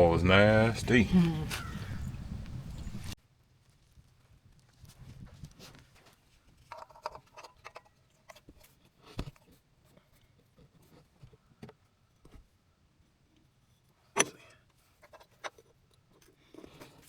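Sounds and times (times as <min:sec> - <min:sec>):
faint clicks of small parts and tools: 0:06.0 - 0:09.5.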